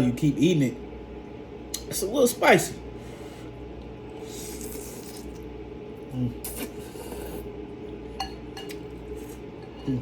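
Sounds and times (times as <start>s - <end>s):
steady low hum: 0.0s - 10.0s
person eating noodles: 4.1s - 5.5s, 6.1s - 7.6s.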